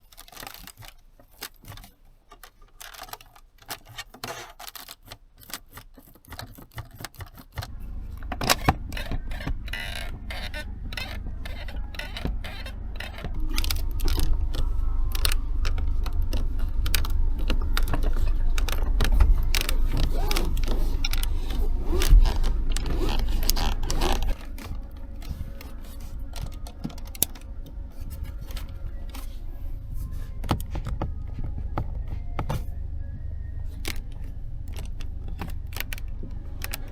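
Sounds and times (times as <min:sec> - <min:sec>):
interior trim creaking and rattling: 0:00.0 - 0:36.9
low rumble of car on road: 0:07.7 - 0:36.9.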